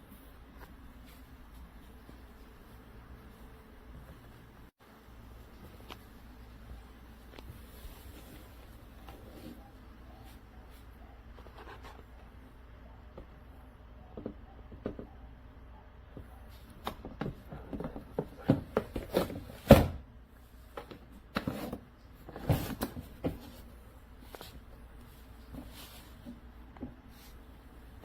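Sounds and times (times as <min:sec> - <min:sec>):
knocks and clicks of objects handled: 0:14.1 - 0:15.2.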